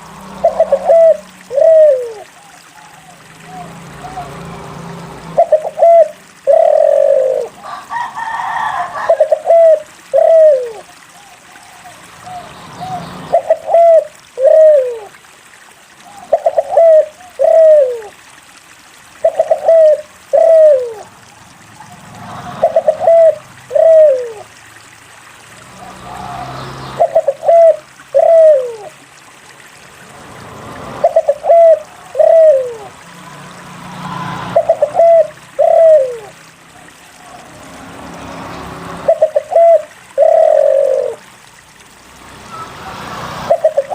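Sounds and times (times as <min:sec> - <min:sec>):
dove cooing: 0:00.2 - 0:04.4, 0:05.3 - 0:15.1, 0:16.0 - 0:18.1, 0:19.2 - 0:21.1, 0:21.8 - 0:24.5, 0:25.8 - 0:29.0, 0:31.0 - 0:33.0, 0:34.3 - 0:37.5, 0:39.0 - 0:41.3, 0:43.4 - 0:43.9.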